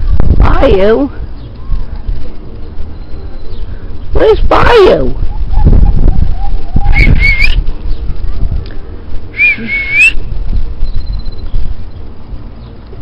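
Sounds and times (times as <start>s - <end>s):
steady low rumble: 0.0s - 13.0s
wavering high whistles: 5.4s - 7.6s, 9.3s - 11.4s.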